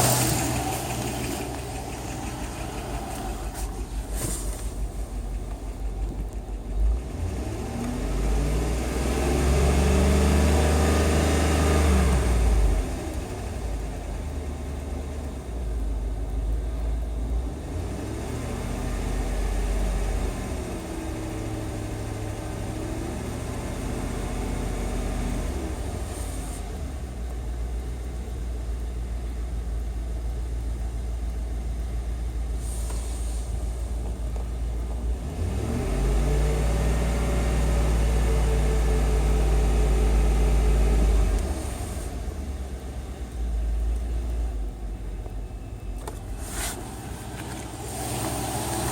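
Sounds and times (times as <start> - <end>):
car engine revving: 0.0 - 13.8, 35.1 - 43.3, 46.0 - 48.9.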